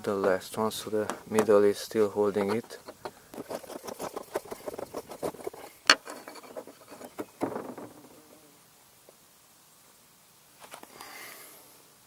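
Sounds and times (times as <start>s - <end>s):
screw scraping on plastic: 1.1s - 8.3s.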